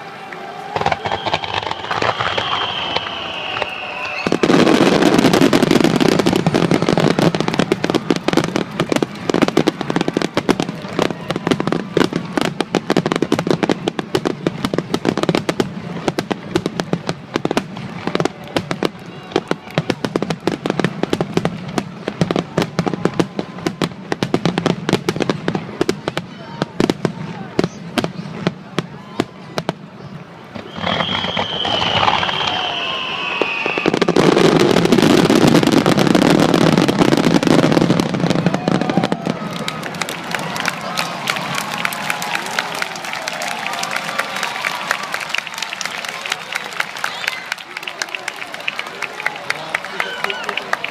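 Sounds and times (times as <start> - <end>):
firework whistle: 0.6 - 9.5, 30.5 - 39.2
rapid firework bangs: 0.7 - 28.6.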